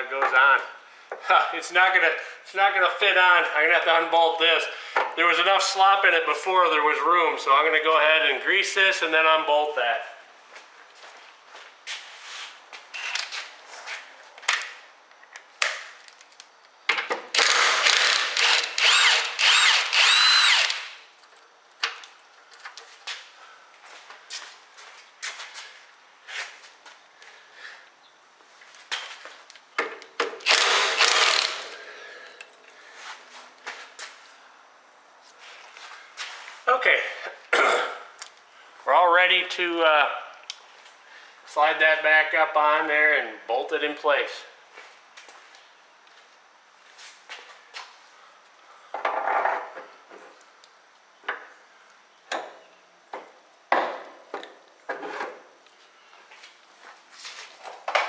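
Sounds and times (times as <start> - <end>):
rasping tool burst: 17.3 - 21.0, 30.4 - 32.4.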